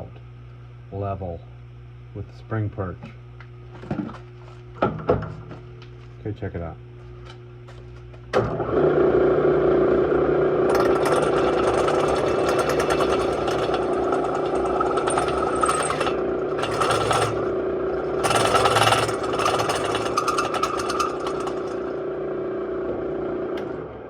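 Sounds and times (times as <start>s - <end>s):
power cutter humming: 8.2s - 24.0s
harsh metal cutting noise: 10.6s - 22.2s.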